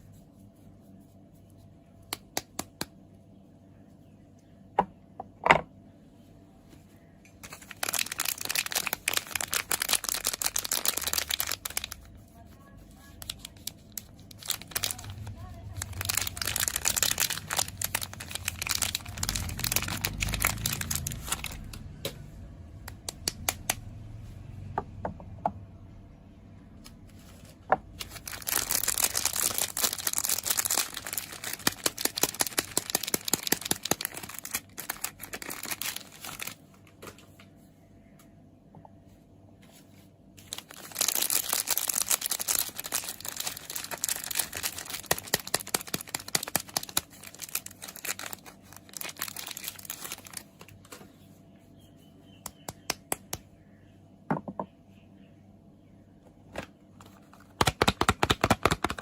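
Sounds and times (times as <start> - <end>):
packaging wrappers crinkling and tearing: 7.4 - 21.9, 22.9 - 23.9, 27.9 - 37.0, 40.4 - 51.1, 57.0 - 59.0.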